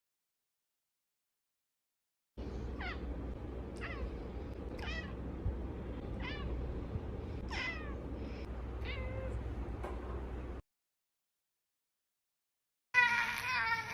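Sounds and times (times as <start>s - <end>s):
steady low hum: 2.4s - 10.6s
cat meowing: 3.8s - 4.1s, 4.8s - 5.2s, 6.2s - 6.6s, 7.5s - 8.0s, 8.8s - 9.4s, 13.0s - 13.9s.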